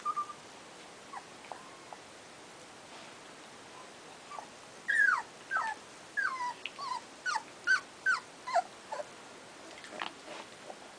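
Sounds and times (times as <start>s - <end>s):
puppy whimpering: 0.0s - 0.4s, 1.1s - 2.0s, 4.3s - 9.1s.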